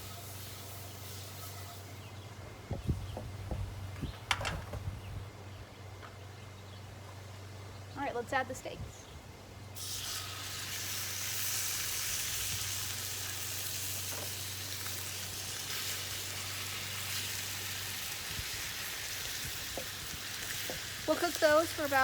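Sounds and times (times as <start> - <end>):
steak sizzling in a pan: 9.8 - 22.0.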